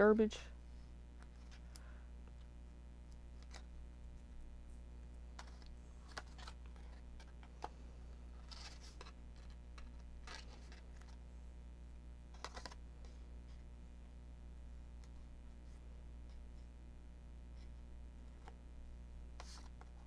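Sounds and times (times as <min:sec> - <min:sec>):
steady low hum: 0:00.0 - 0:20.0
paper rustling: 0:05.4 - 0:07.8, 0:08.4 - 0:11.2, 0:12.3 - 0:13.6.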